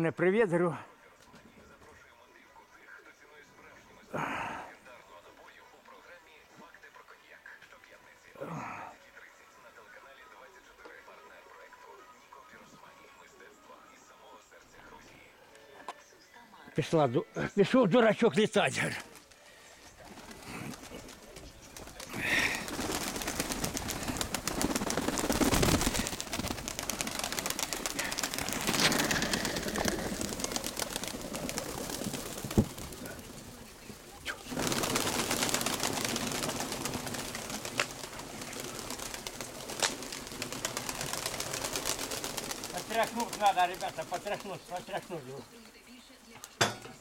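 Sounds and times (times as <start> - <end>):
pigeons cooing: 20.0 - 45.4.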